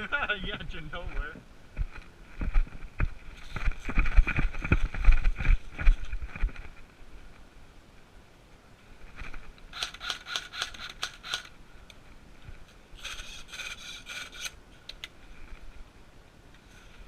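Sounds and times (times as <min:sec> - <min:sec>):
quick scraping and rustling: 0:02.0 - 0:06.9.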